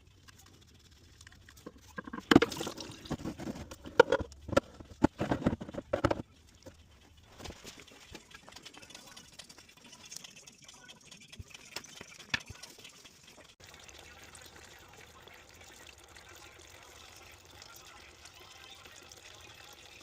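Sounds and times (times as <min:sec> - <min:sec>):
faint handling noise: 0:01.2 - 0:08.8
tools knocking and clicking: 0:03.6 - 0:06.2.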